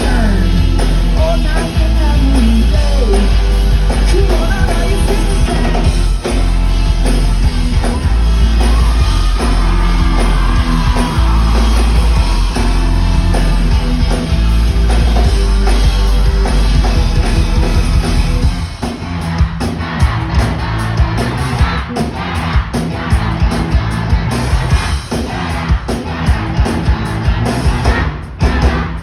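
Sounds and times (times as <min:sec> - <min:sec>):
person singing: 0:00.0 - 0:06.0
crowd voices: 0:00.0 - 0:29.0
live band playing: 0:00.0 - 0:29.0
steady drum beat: 0:00.0 - 0:29.0.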